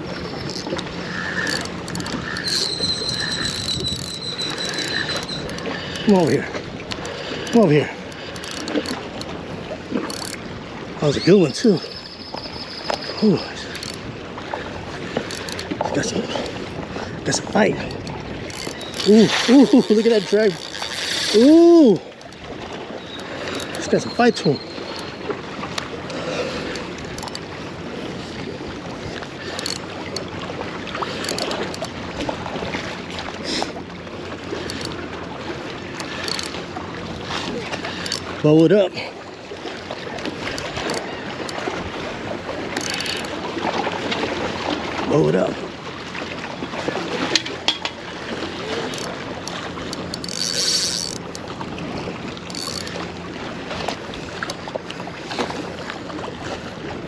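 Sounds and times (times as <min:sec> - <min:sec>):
fishing reel drag buzzing: 0:00.0 - 0:10.4, 0:11.5 - 0:25.3, 0:26.1 - 0:30.2, 0:30.9 - 0:32.0, 0:32.6 - 0:33.8, 0:34.5 - 0:35.1, 0:36.0 - 0:38.4, 0:40.2 - 0:41.8, 0:42.6 - 0:43.4, 0:48.2 - 0:53.2
water noise: 0:00.0 - 0:57.0
waves washing: 0:00.0 - 0:57.0
wind: 0:00.0 - 0:57.0
faint clicks: 0:00.4 - 0:06.1, 0:13.7 - 0:14.0, 0:29.4 - 0:30.3, 0:48.9 - 0:51.5, 0:52.5 - 0:53.0
wind buffeting microphone: 0:13.7 - 0:24.6.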